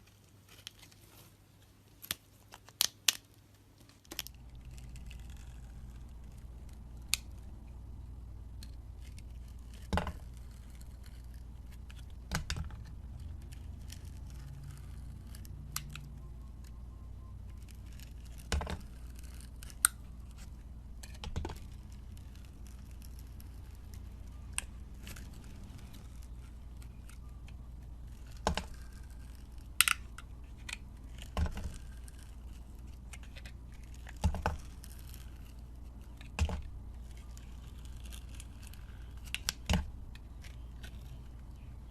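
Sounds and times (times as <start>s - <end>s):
low hum: 4.2s - 41.9s.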